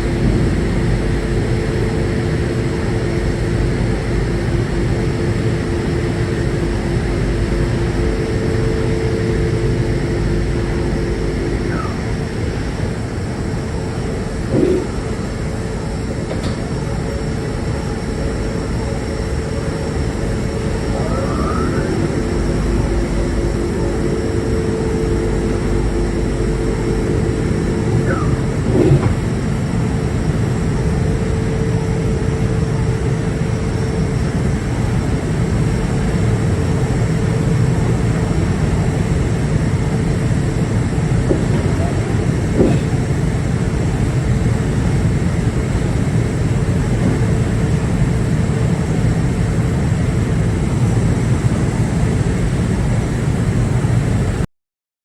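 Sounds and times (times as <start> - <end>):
ship engines low rumble: 0.0 - 54.5
steady hum: 0.0 - 54.5.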